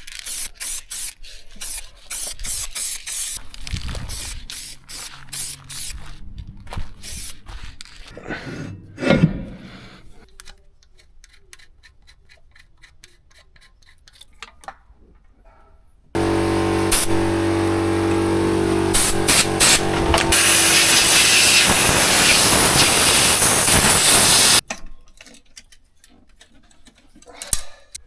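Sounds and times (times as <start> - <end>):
loud spraying hiss: 16.2 - 24.6
machine motor humming: 16.2 - 24.6.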